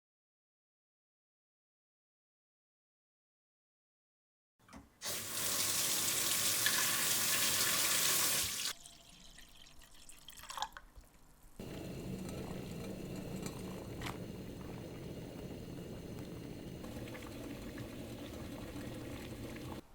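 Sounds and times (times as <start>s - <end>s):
tap running water into pot: 5.0s - 8.7s, 11.7s - 19.8s
heating water hissing: 5.0s - 8.8s, 11.6s - 19.8s.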